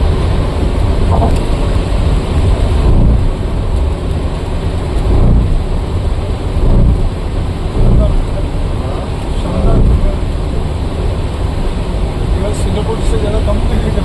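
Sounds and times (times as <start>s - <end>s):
low rumble: 0.0s - 12.5s
heavy rain: 0.0s - 14.0s.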